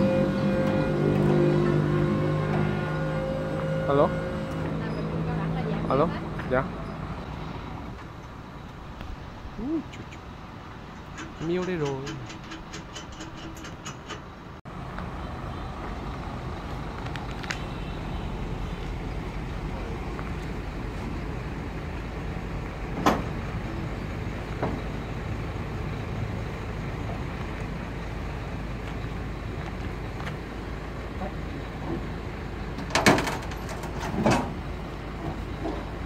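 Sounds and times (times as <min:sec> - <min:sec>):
vehicle rumble: 0:00.0 - 0:36.0
clattering knocks: 0:10.9 - 0:14.4.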